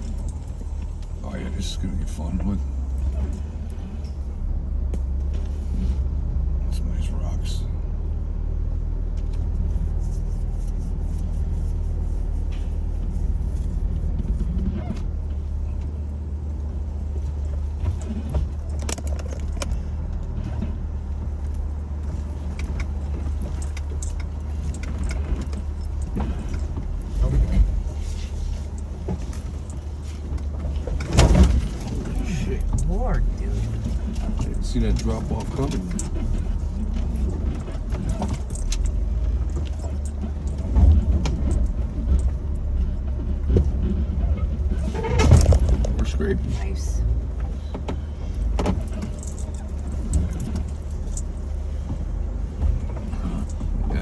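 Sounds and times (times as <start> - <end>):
car engine crawling: 0.0 - 54.0
clinks and rattles: 17.2 - 20.7, 21.4 - 54.0.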